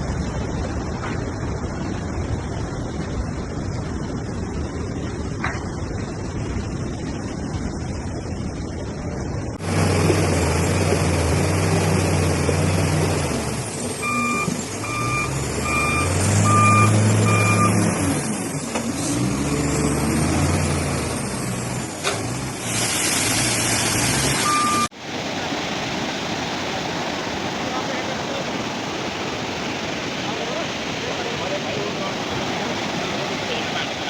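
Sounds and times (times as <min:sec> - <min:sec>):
heavy vehicle engine running: 0:00.0 - 0:34.0
reversing alarm beeps: 0:14.0 - 0:17.9, 0:24.4 - 0:24.9.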